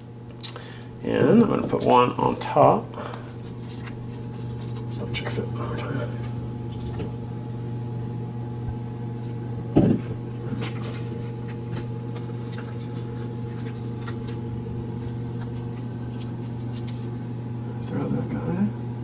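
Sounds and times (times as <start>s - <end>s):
steady electrical hum: 0.0s - 19.0s
dull thump: 9.7s - 10.2s.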